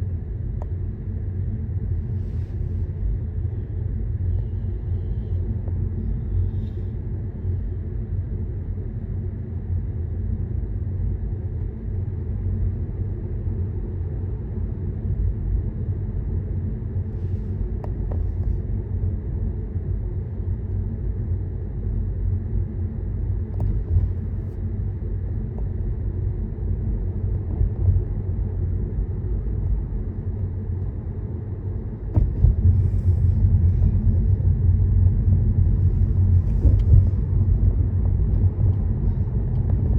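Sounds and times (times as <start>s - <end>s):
car driving on motorway: 31.7s - 39.9s.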